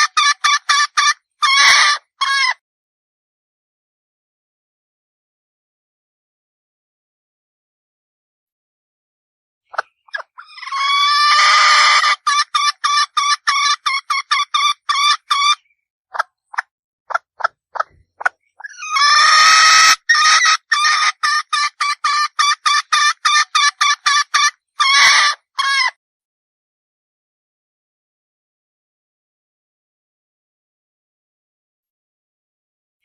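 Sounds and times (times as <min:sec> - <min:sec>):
hen squawking and clucking: 0:00.0 - 0:02.6, 0:09.7 - 0:26.0.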